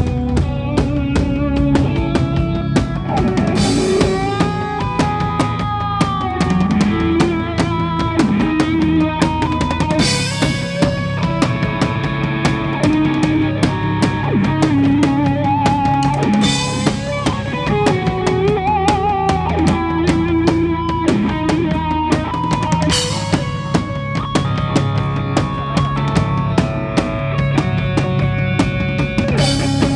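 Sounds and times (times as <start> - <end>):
live band playing: 0.0 - 29.9.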